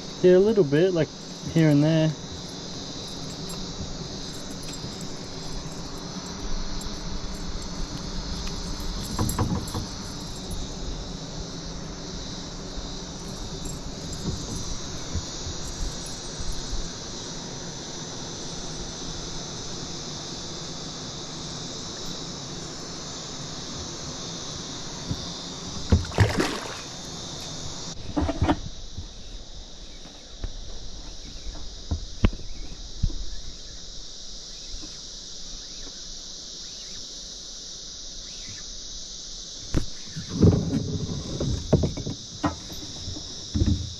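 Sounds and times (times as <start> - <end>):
insects chirping: 0.0 - 43.9
handling noise: 13.2 - 16.7.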